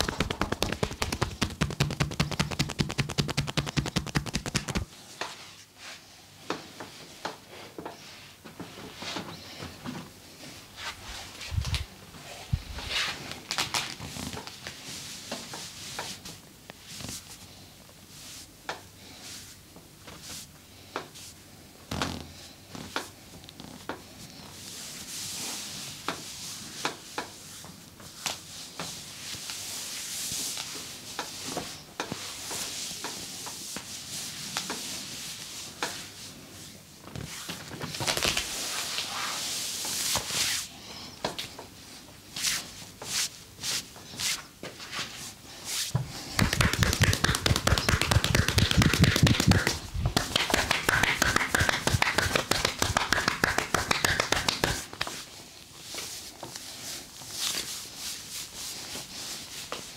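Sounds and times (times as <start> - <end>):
hands smacking skin: 0.0 - 4.9, 46.3 - 55.2
palms rubbing over skin: 0.0 - 4.9, 45.8 - 55.2.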